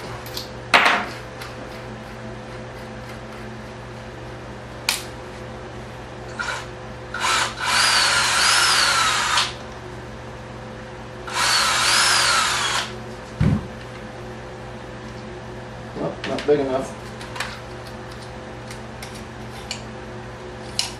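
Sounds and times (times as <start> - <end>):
small power drill boring: 6.4 - 9.6, 11.3 - 12.9
low thump: 13.4 - 13.7.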